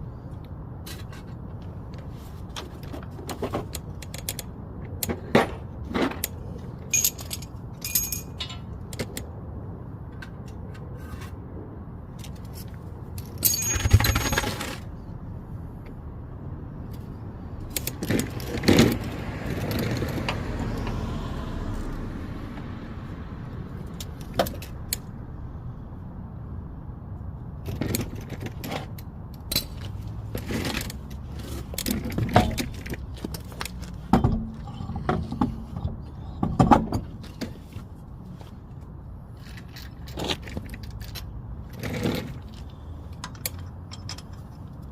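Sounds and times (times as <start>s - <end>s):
metal tools and lug nuts clinking: 2.6s - 9.3s, 12.2s - 15.0s, 27.7s - 33.5s, 39.4s - 44.9s.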